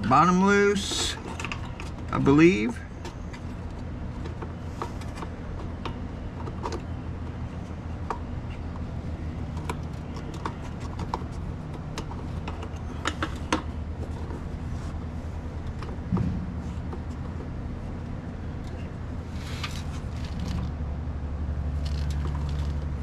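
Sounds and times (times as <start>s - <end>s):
steady low rumble: 13.4s - 23.0s.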